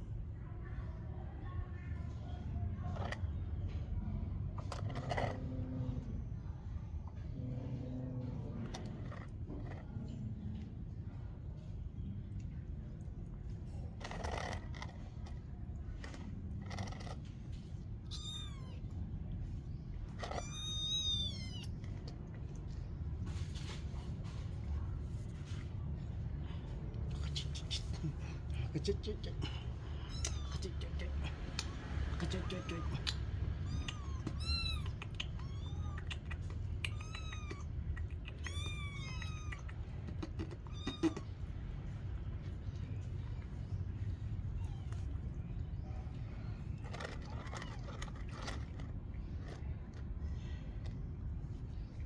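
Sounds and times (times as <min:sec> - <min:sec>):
cat meowing: 0:18.0 - 0:19.0, 0:20.2 - 0:22.0, 0:30.0 - 0:30.8, 0:32.2 - 0:41.4.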